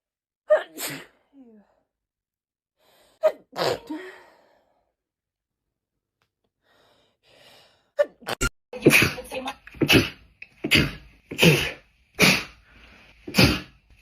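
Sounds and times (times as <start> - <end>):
woman sneezing: 3.2 - 4.2, 8.8 - 12.6, 13.3 - 13.8.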